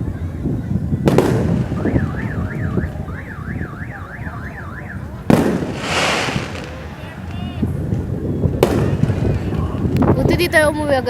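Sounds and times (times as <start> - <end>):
firework crackling: 0.7 - 11.0
firework bang: 1.0 - 3.7, 5.2 - 10.0
car alarm warbling: 1.7 - 5.3.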